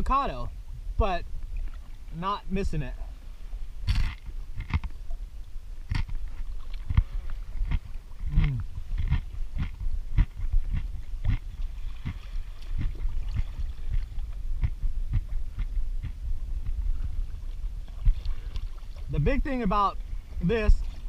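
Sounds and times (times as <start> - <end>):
person humming: 8.3 - 8.7.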